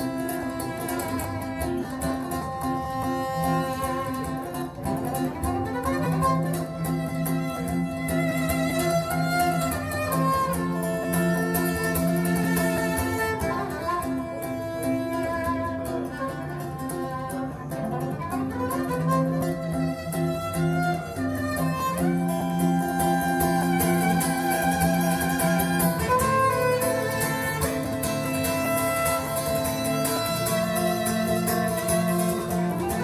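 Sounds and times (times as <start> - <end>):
guitar: 0.0 - 33.0
string music over loudspeakers: 0.0 - 33.0.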